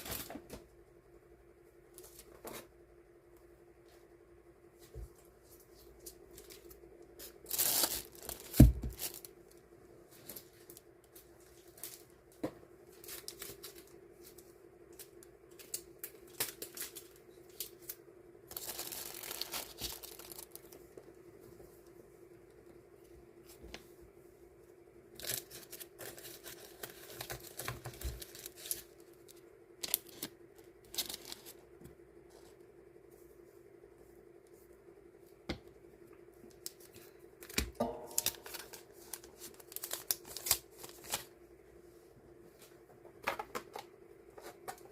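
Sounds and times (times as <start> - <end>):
steady low hum: 0.0 - 44.9
stickers rustling and crinkling: 4.9 - 21.1, 25.1 - 32.6, 36.5 - 41.4.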